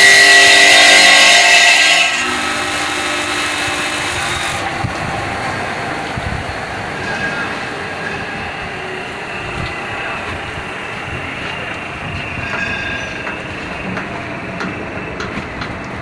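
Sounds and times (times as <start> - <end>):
stone cutting machine running: 0.0 - 5.1.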